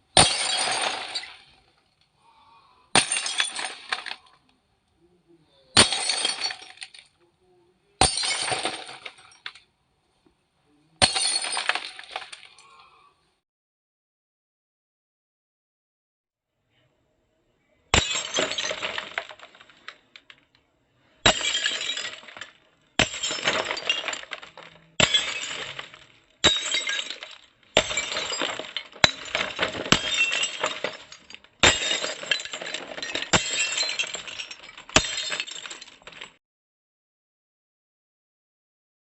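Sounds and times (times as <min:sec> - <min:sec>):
glass smashing: 0:00.2 - 0:01.6, 0:03.0 - 0:04.4, 0:05.8 - 0:07.2, 0:08.0 - 0:09.6, 0:11.0 - 0:12.7, 0:17.9 - 0:19.9, 0:21.2 - 0:36.4
glass shards tinkling: 0:21.3 - 0:36.3.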